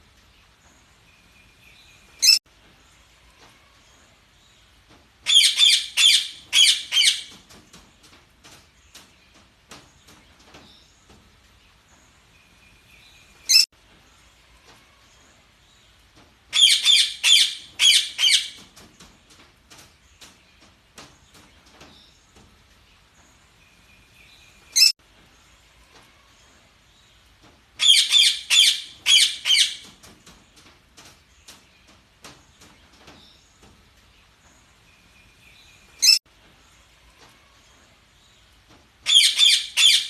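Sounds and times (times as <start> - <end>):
sharp bird calls: 5.3 - 7.4, 27.8 - 29.9, 39.1 - 40.0.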